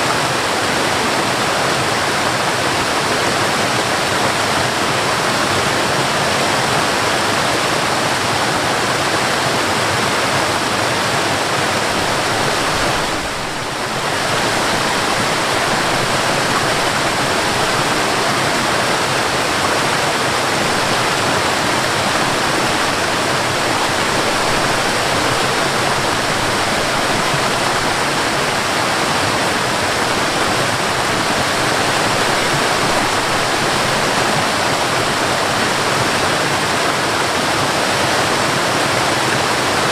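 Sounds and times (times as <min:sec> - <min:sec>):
waterfall rushing and splashing: 0:00.0 - 0:39.9.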